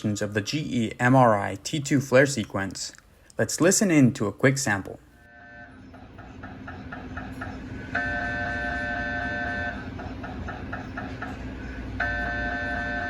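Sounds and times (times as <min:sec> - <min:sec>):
low hum: 0:05.0 - 0:13.0
loud high buzzing tone: 0:05.3 - 0:10.0, 0:11.9 - 0:13.0
mri scanner rapid pulsing: 0:05.3 - 0:13.0.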